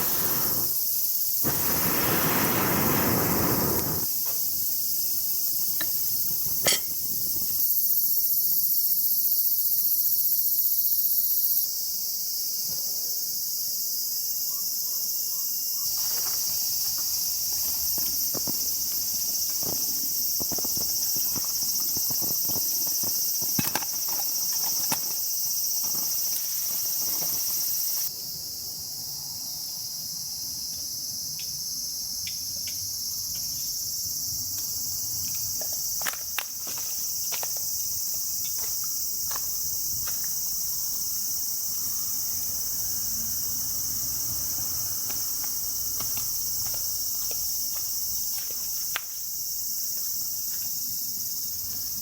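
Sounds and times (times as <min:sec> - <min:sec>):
insects chirring: 0:00.0 - 0:52.0.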